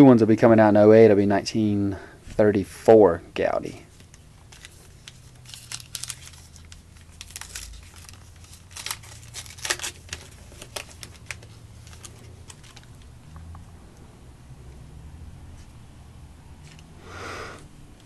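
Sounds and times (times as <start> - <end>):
wrappers crinkling and tearing: 3.9 - 13.2.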